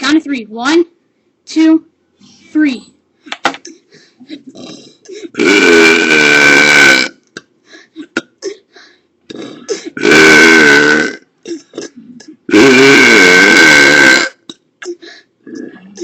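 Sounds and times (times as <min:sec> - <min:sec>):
loud burps: 0:04.4 - 0:07.5, 0:09.3 - 0:16.0.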